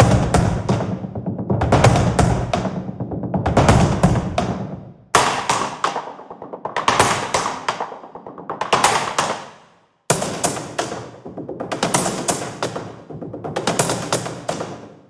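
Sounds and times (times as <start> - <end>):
cardboard box percussion: 10.1 - 12.8.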